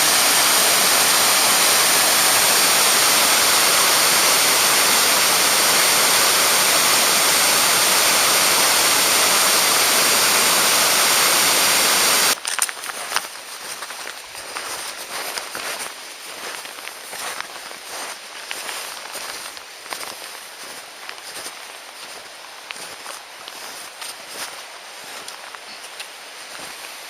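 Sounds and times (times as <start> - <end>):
stream water rushing: 0.0 - 12.4
scattered clicks and rustles: 12.3 - 16.0.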